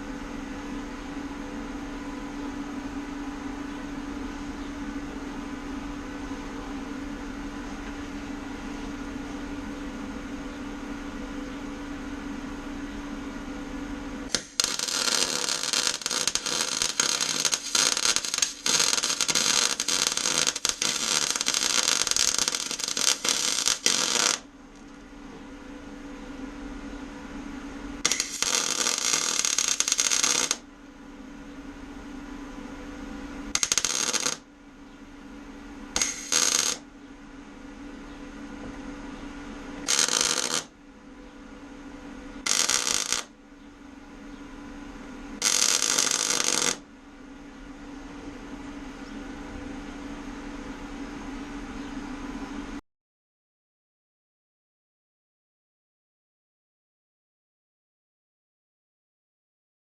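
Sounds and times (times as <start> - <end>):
welder humming: 13.1 - 25.0, 27.9 - 30.7, 33.0 - 34.5, 35.2 - 36.8, 39.5 - 40.8, 42.3 - 43.4, 45.3 - 46.9
welding arc crackling: 14.3 - 24.5, 28.0 - 30.6, 33.5 - 34.4, 36.0 - 36.8, 39.8 - 40.7, 42.4 - 43.3, 45.4 - 46.8.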